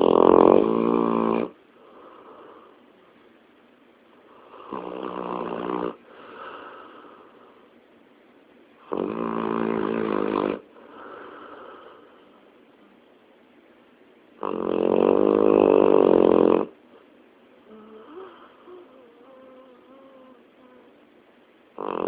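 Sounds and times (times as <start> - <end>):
loud buzzing snores: 0.0 - 1.6, 4.4 - 6.0, 8.8 - 10.6, 14.4 - 16.8, 21.8 - 22.0
quiet breath: 1.7 - 3.3, 5.9 - 7.9, 10.6 - 12.6, 16.8 - 21.4.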